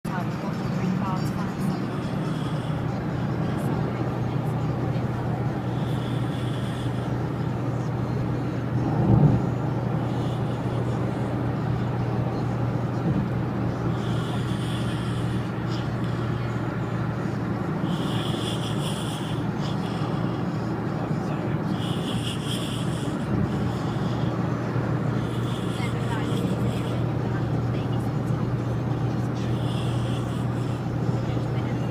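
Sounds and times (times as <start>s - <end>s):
vehicle engine drone and road noise: 0.0s - 31.9s
man snoring: 1.7s - 3.3s, 5.5s - 7.5s, 10.0s - 11.9s, 13.9s - 16.3s, 17.8s - 20.6s, 21.7s - 24.4s, 25.1s - 27.2s, 29.4s - 31.0s.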